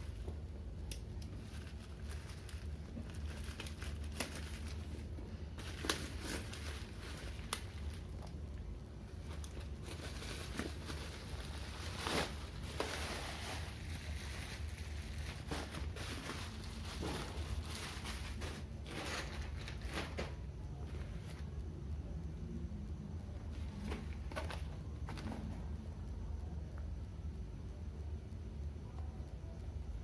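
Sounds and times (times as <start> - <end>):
packaging crinkling and rustling: 0.0 - 21.5, 23.5 - 25.8
steady low hum: 0.0 - 30.0
packaging ripping: 0.9 - 8.2, 9.2 - 20.2.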